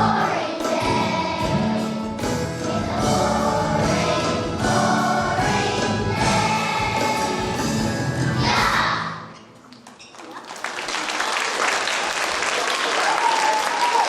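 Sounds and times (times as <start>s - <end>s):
children's choir singing: 0.0s - 9.4s.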